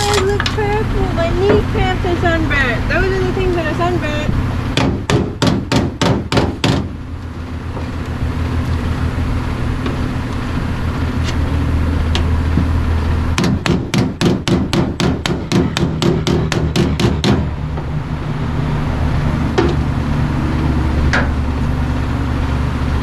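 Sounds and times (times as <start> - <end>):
steady low hum: 0.0 - 23.0
hammer striking sheet metal: 13.4 - 17.5.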